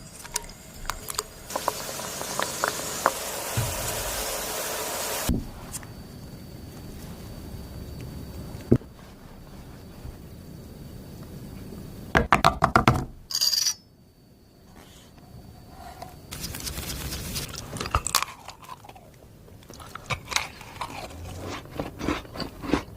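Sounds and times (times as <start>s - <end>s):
kitchen clicks and crunches: 17.4s - 22.9s.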